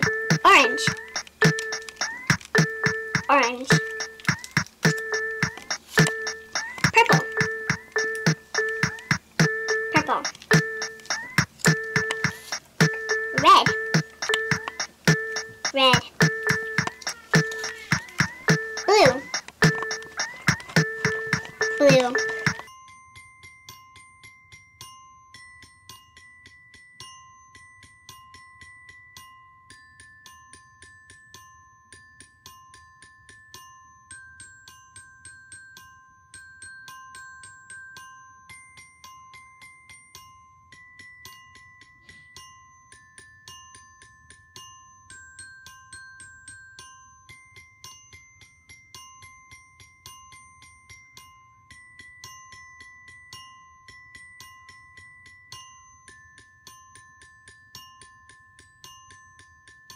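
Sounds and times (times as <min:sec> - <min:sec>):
glockenspiel tune: 0:00.0 - 0:59.9.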